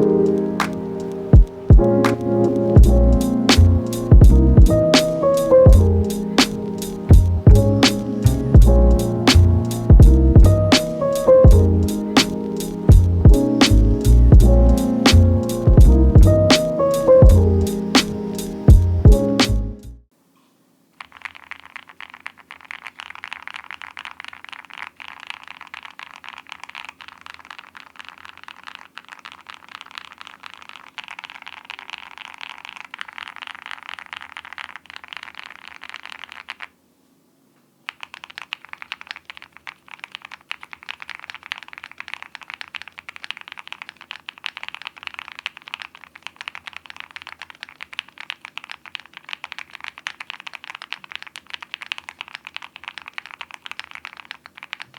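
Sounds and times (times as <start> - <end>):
mechanical keyboard typing: 0.0 - 18.8, 21.0 - 36.7, 37.9 - 54.9.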